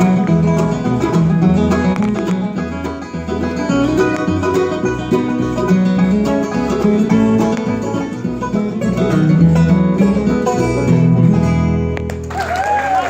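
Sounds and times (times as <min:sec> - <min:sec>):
banjo and guitar picking: 0:00.0 - 0:12.3
audience applause and cheering: 0:12.1 - 0:13.0.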